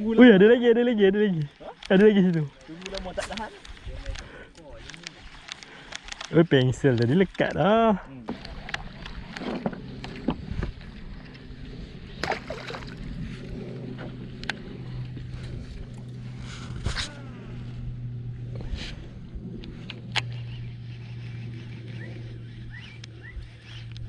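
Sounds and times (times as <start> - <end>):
boat motor humming: 8.0 - 24.0.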